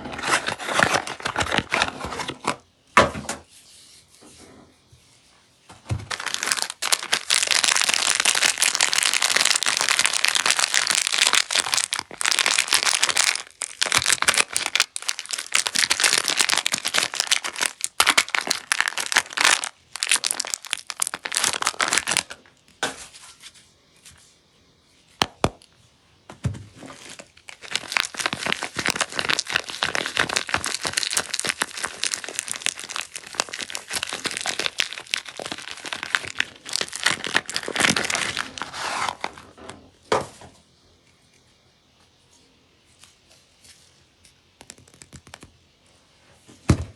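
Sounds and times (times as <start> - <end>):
packaging crinkling and tearing: 0.0 - 2.7, 6.0 - 22.6, 26.8 - 39.8, 44.6 - 45.7.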